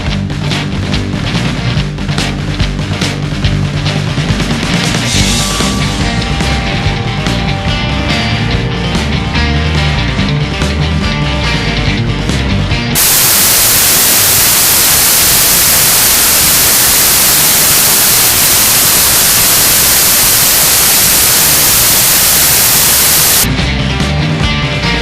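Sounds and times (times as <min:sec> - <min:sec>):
loud static hiss: 0:13.0 - 0:23.5.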